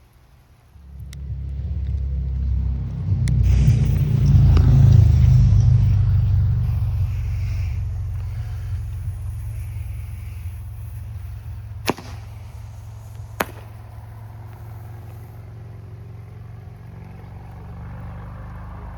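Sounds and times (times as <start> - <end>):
steady low rumble: 0.0 - 18.9
firework cracks: 3.3 - 16.4.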